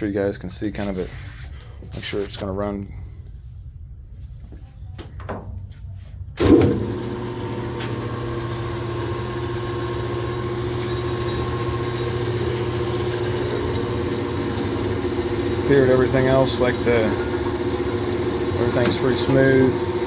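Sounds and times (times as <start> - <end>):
lathe motor humming: 6.4 - 20.0.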